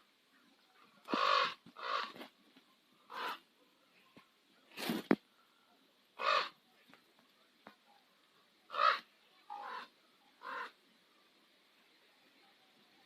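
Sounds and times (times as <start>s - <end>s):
raven croaking: 1.0s - 2.3s, 3.1s - 3.5s, 6.2s - 6.6s, 8.7s - 10.8s.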